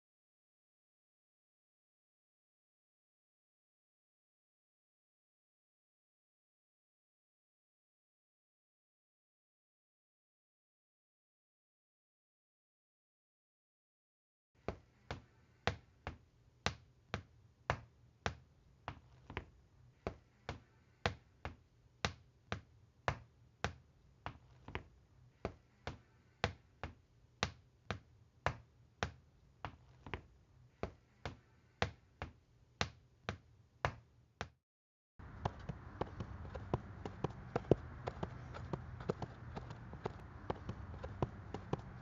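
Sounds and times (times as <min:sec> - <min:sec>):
sharp taps: 0:35.2 - 0:42.0.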